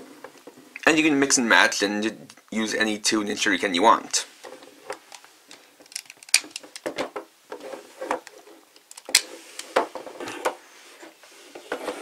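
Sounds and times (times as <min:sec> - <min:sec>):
plastic toy parts clicking: 0:05.8 - 0:07.0, 0:08.7 - 0:09.7.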